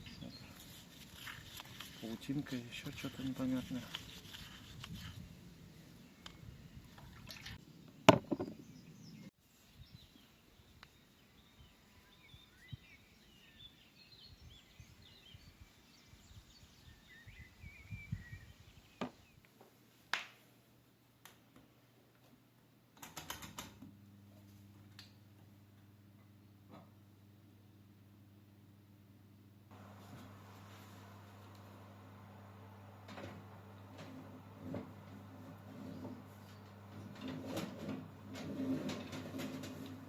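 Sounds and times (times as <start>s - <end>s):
small birds chirping: 0.0s - 5.1s, 8.2s - 19.4s
sharp knocks: 8.1s - 8.6s.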